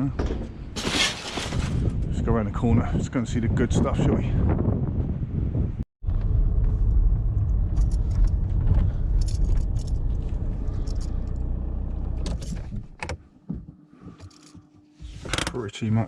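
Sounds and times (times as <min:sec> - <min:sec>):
car engine and road rumble: 0:06.0 - 0:15.5
clinks and rattles: 0:07.7 - 0:11.5.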